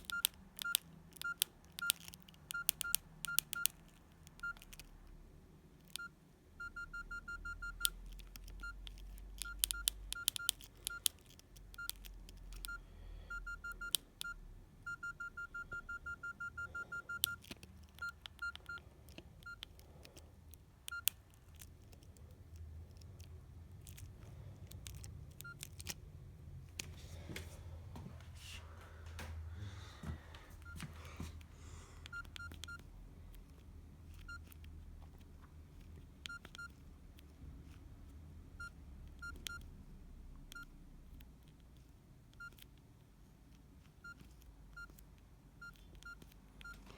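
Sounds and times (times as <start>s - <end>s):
phone keypad beeps: 0.0s - 5.0s, 5.8s - 21.2s, 24.8s - 26.0s, 30.6s - 30.8s, 32.0s - 33.4s, 34.1s - 34.6s, 36.2s - 36.8s, 38.5s - 39.7s, 40.4s - 40.8s, 42.3s - 42.7s, 43.9s - 45.0s, 45.6s - 46.9s.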